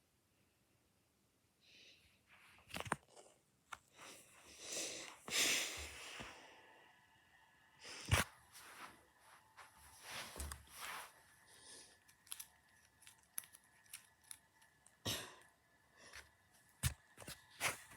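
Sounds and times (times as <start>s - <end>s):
rustling and scraping: 8.0s - 15.0s, 16.0s - 17.9s.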